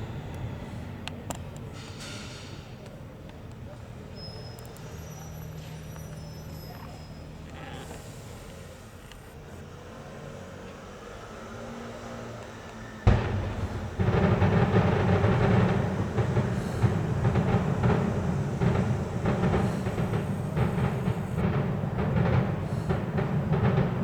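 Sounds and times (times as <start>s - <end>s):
firework bang: 13.1s - 24.0s
fireworks booming and crackling: 13.1s - 24.0s.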